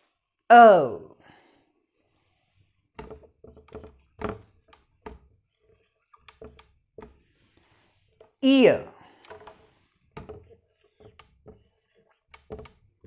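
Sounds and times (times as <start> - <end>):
soft thumps and taps: 3.0 - 8.4, 9.2 - 12.9.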